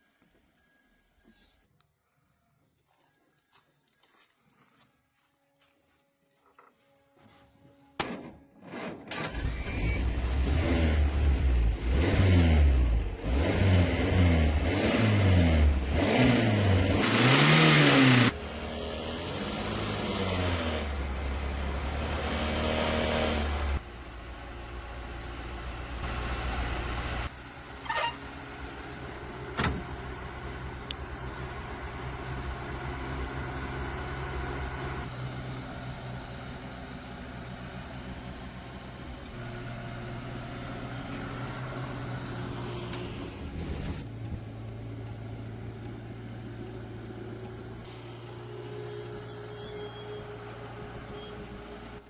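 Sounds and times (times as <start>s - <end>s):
engine revving: 9.1s - 23.9s.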